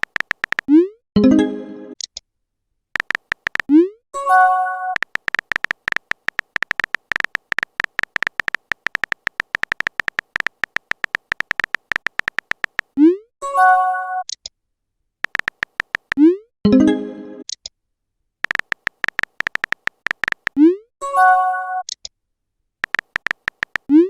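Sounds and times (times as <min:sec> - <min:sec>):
keyboard typing clicks: 0:00.0 - 0:00.8, 0:03.0 - 0:03.8, 0:04.9 - 0:13.0, 0:15.2 - 0:16.3, 0:18.4 - 0:20.7, 0:22.8 - 0:24.0.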